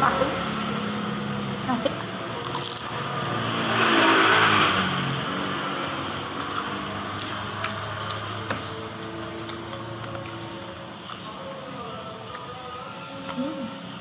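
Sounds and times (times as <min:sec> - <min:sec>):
vehicle engine passing by: 0:00.0 - 0:10.6.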